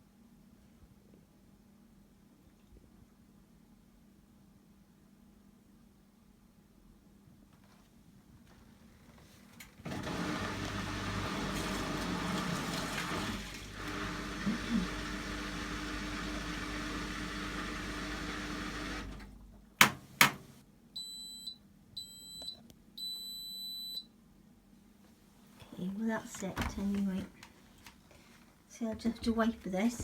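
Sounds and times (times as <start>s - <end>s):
washing machine running: 9.8s - 20.6s.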